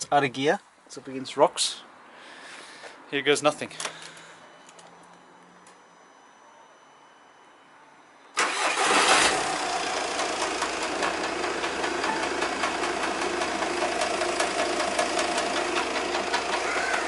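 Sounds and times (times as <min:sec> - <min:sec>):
diesel engine starting and idling: 0:08.3 - 0:17.0.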